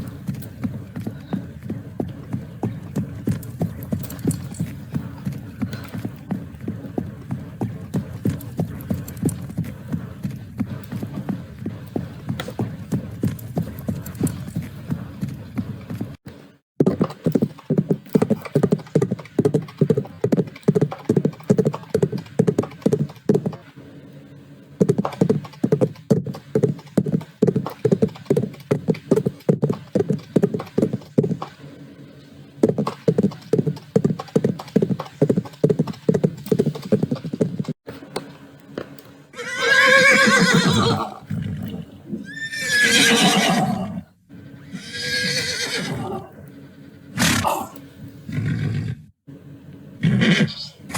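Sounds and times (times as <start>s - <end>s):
hooves clip-clopping: 0.0s - 48.8s
horse whinnying: 39.4s - 46.4s, 47.2s - 49.1s, 50.0s - 50.8s.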